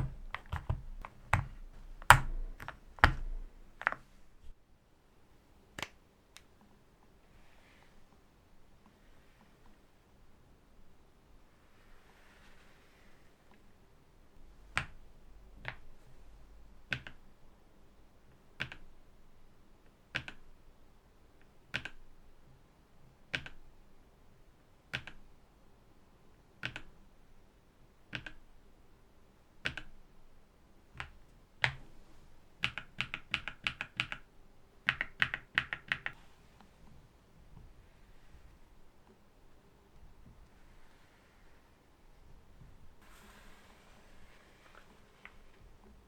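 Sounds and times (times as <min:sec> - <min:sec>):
rapid keystrokes: 0:00.0 - 0:04.0, 0:32.6 - 0:36.2
mechanical keyboard keys pressed: 0:00.0 - 0:04.1, 0:34.9 - 0:36.2.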